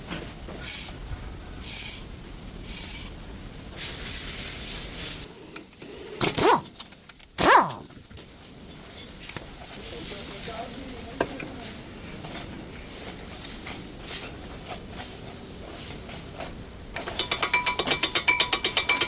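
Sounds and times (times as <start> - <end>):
brakes squealing: 0.6 - 3.2.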